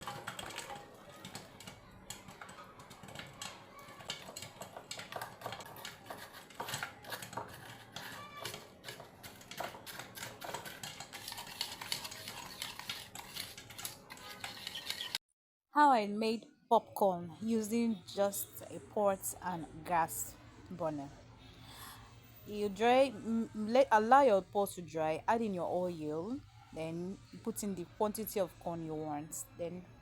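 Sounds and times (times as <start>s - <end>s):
popcorn popping in a pot: 0.0s - 15.1s.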